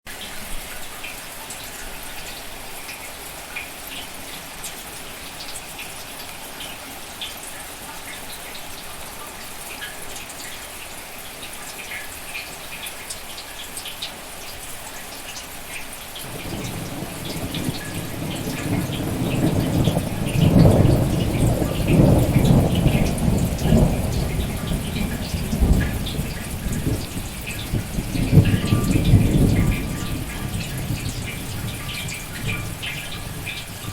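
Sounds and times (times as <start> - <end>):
steady rain with ticking drops: 0.1 - 33.9
low roll of thunder: 16.3 - 33.9.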